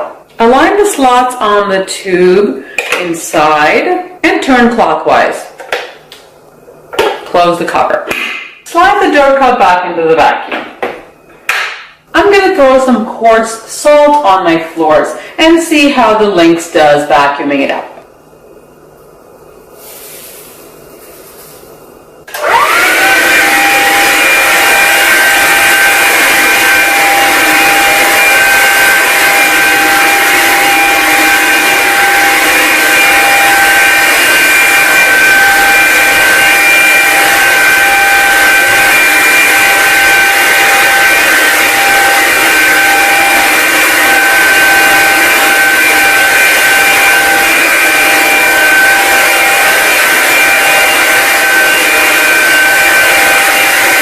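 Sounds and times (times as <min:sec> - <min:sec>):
vacuum cleaner motor whining: 0:22.3 - 0:54.0.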